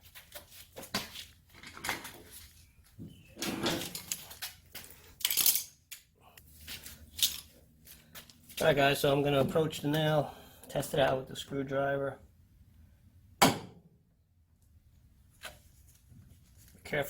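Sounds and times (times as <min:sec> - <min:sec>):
gear rustling and clattering: 0:03.7 - 0:06.0.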